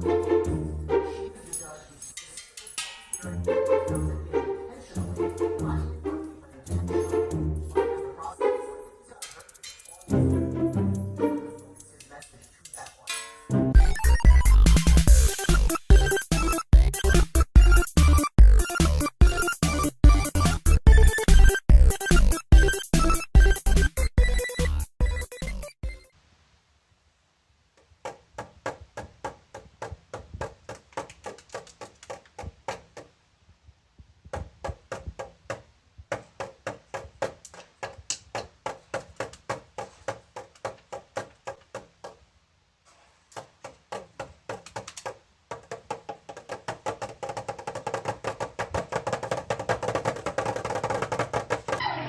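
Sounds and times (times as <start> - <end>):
rapid wood-like tapping: 28.0 - 33.2, 34.0 - 42.3, 43.3 - 51.8.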